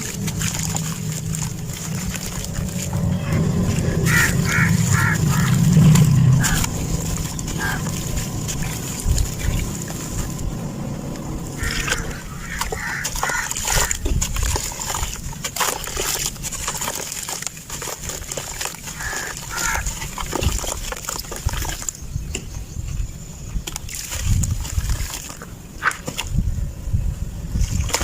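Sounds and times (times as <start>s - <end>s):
dry cement chunks crunching: 0.0s - 10.4s, 11.6s - 22.0s.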